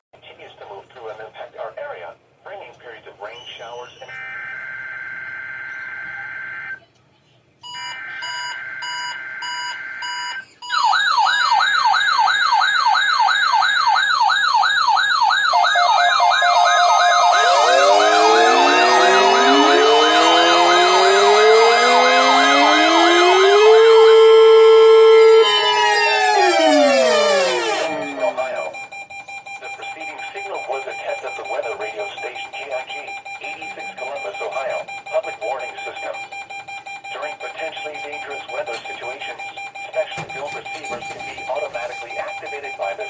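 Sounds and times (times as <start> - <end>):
warbling alarm tones: 3.9 - 6.8, 7.7 - 42.9
rising wailing tones: 15.9 - 28.8
buzzy digital header bursts: 16.4 - 28.8.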